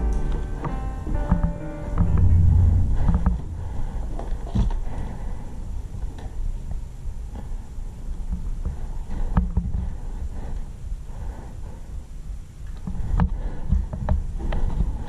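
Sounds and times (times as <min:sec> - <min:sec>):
steady low rumble: 0:00.0 - 0:07.6.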